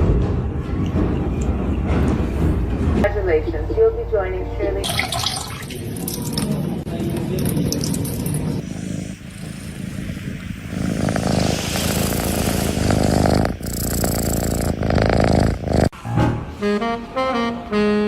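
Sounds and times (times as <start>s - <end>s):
cat purring: 7.3s - 16.0s
saxophone jazz tune: 16.4s - 18.0s.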